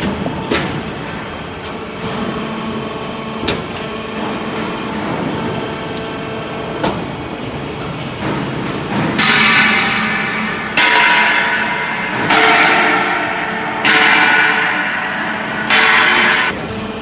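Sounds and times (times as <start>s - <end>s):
baler machine hum: 9.0s - 17.0s.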